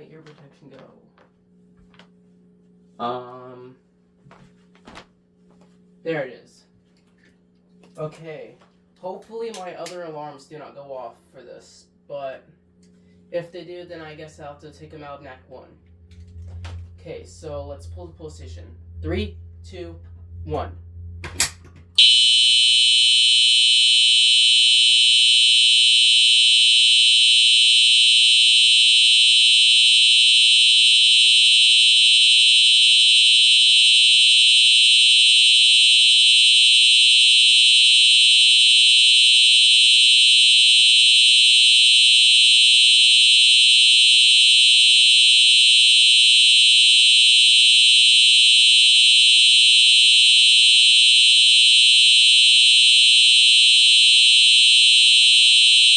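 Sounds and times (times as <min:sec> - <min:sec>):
high-pitched fire alarm: 0:15.1 - 0:20.8, 0:21.4 - 0:55.9.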